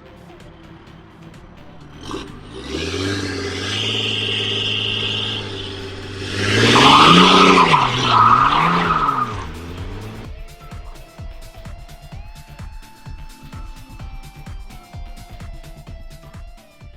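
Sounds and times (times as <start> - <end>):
car engine revving: 0.2 - 10.3
tyre squeal: 2.0 - 10.2.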